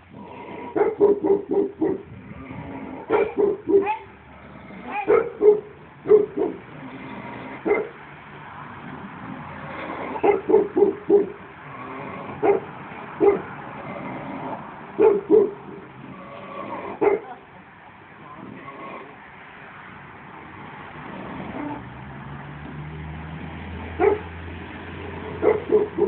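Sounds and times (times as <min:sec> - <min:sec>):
dog barking: 0:00.8 - 0:02.0, 0:03.1 - 0:04.1, 0:04.9 - 0:06.6, 0:07.6 - 0:08.0, 0:10.2 - 0:11.4, 0:12.4 - 0:13.5, 0:15.0 - 0:15.6, 0:17.0 - 0:17.4, 0:24.0 - 0:24.3, 0:25.4 - 0:26.0.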